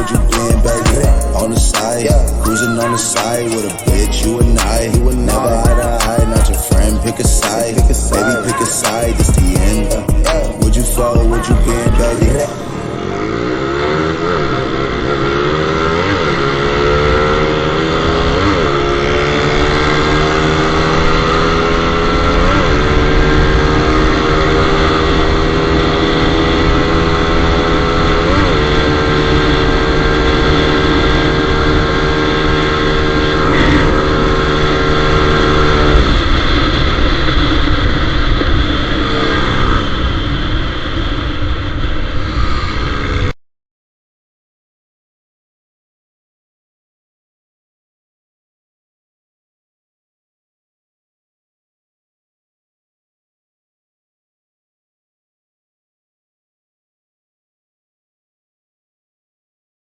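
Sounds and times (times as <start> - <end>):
motorcycle engine accelerating: 0.0 - 43.4.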